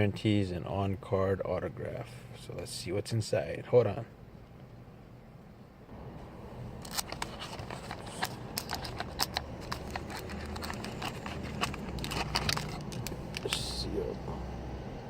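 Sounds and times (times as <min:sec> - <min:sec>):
plastic wrap crackling and tearing: 0:06.8 - 0:13.5.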